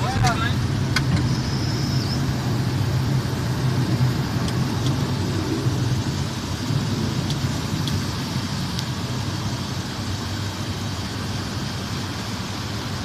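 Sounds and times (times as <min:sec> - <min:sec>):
aircraft engine drone: 0:00.0 - 0:13.0
faint high steady tone: 0:01.2 - 0:02.6.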